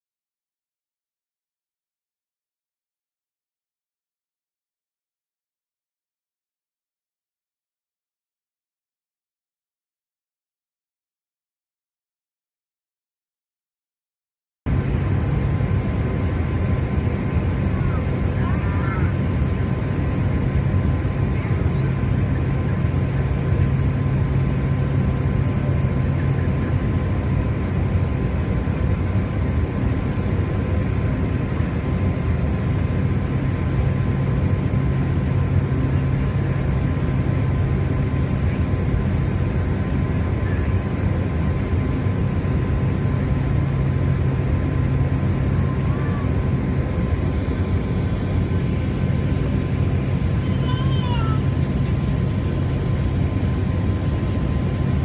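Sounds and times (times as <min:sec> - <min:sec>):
jet aircraft drone: 0:14.7 - 0:55.0.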